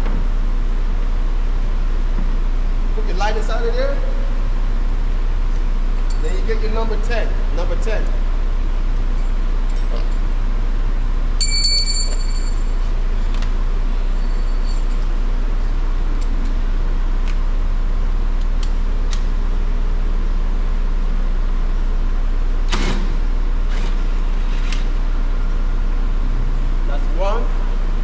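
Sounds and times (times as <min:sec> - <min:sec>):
steady low hum: 0:00.0 - 0:28.0
screwdriver metallic clinks: 0:11.4 - 0:12.8
high metallic ring: 0:11.4 - 0:13.0, 0:14.0 - 0:15.1.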